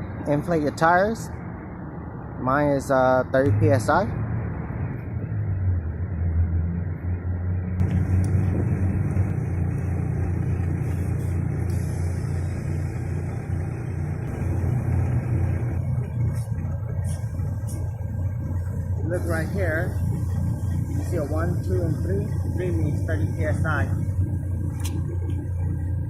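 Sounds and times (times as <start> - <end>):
air compressor humming: 7.8 - 26.0.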